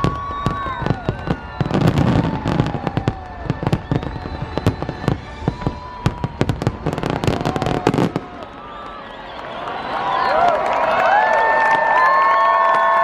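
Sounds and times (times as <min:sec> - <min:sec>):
fireworks exploding: 0:00.0 - 0:09.9.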